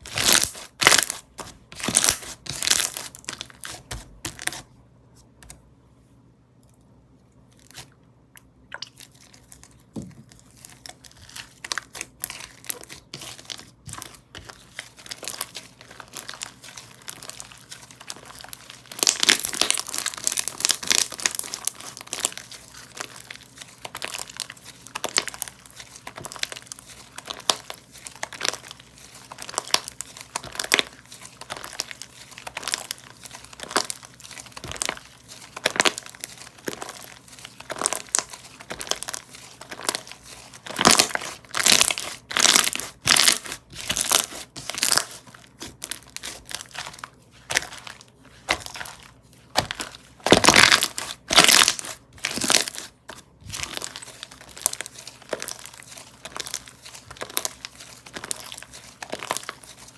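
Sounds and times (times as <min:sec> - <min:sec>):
slime crackling and popping: 0:00.0 - 0:04.6, 0:08.7 - 0:59.9.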